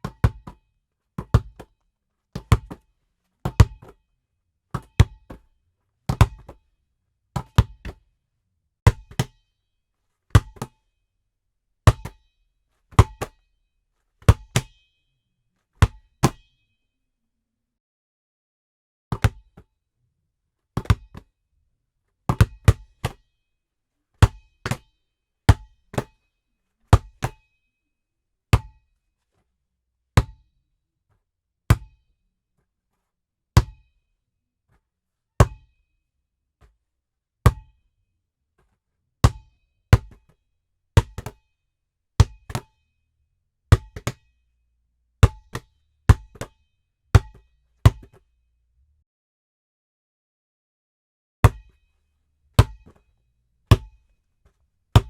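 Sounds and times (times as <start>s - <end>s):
basketball bouncing: 0.0s - 0.5s, 1.2s - 1.7s, 2.4s - 2.8s, 3.5s - 4.0s, 4.8s - 5.4s, 6.1s - 6.6s, 10.4s - 10.7s, 19.2s - 19.6s, 20.8s - 21.2s, 22.3s - 23.2s, 43.7s - 44.2s, 45.2s - 46.5s, 47.2s - 48.2s, 52.6s - 53.0s, 53.7s - 53.9s.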